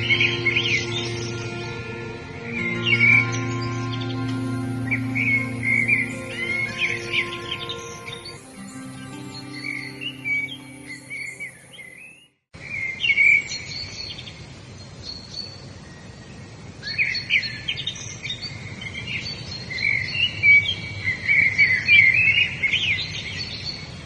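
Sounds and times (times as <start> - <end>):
steady background hiss: 0.0 - 11.9
soft instrumental music: 0.0 - 12.0
songbirds chirping and trilling: 0.0 - 24.0.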